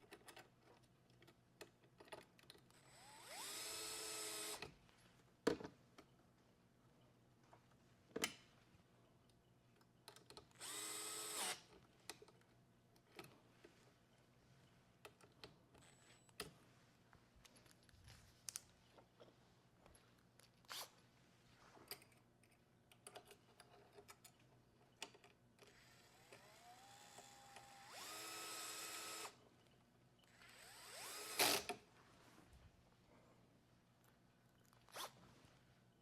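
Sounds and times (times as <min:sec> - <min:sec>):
tools and parts clicking: 0:00.0 - 0:02.8, 0:09.7 - 0:10.8, 0:11.4 - 0:13.4, 0:21.9 - 0:28.2
electric screwdriver whining: 0:02.8 - 0:04.6, 0:10.6 - 0:11.6, 0:25.7 - 0:29.4, 0:30.4 - 0:31.7.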